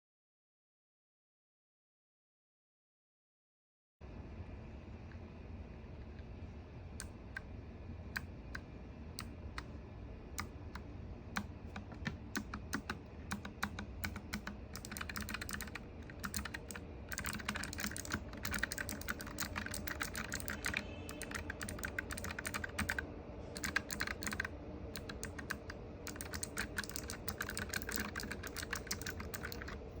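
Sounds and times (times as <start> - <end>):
steady low hum: 4.0 - 30.0
typing on mechanical keyboard: 11.4 - 23.0, 23.6 - 30.0.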